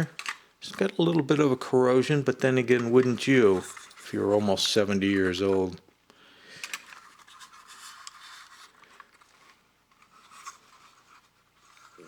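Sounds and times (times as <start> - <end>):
tin toy scratching and clicking: 2.5 - 4.5, 6.6 - 9.4.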